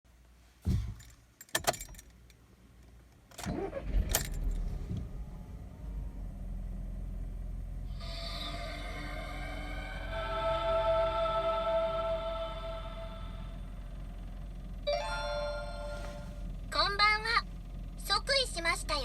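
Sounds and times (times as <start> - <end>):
car engine starting and idling: 0.7 - 19.0
music: 8.2 - 13.5.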